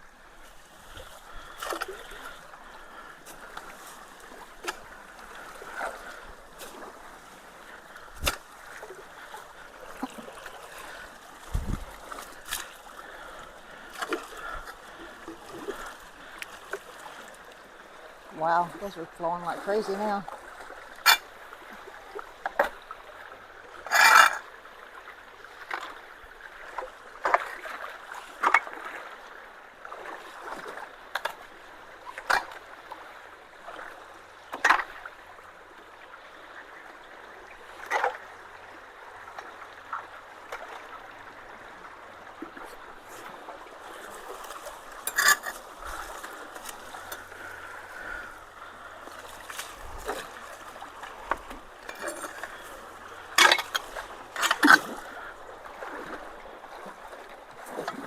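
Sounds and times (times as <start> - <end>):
creek water rushing through culverts: 0.0 - 58.0
sharp splashes and knocks: 8.1 - 10.7, 49.1 - 56.2.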